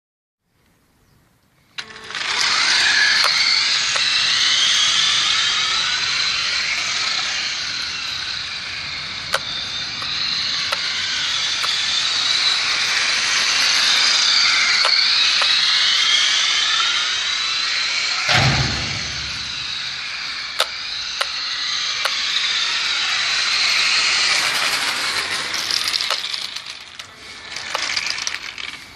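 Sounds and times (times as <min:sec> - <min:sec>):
toy car motor whining: 0:01.7 - 0:28.9
sharp clicks: 0:01.8 - 0:04.6, 0:09.2 - 0:13.1, 0:13.7 - 0:16.2, 0:18.2 - 0:21.4, 0:24.8 - 0:28.9
low thump: 0:18.3 - 0:20.1.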